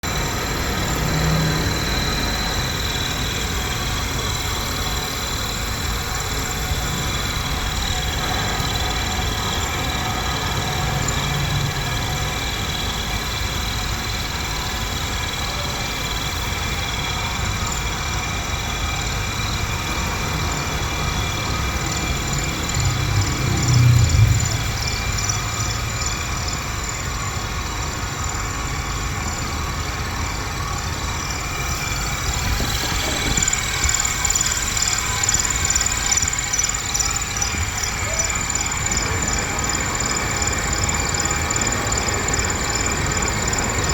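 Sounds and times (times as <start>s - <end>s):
low hum: 21.3s - 26.8s
cnc machine cutting metal: 30.1s - 43.9s.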